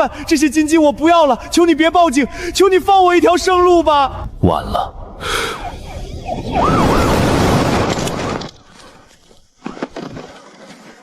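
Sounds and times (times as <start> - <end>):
loud rush of noise: 5.2 - 8.6
police siren wailing: 5.6 - 8.0.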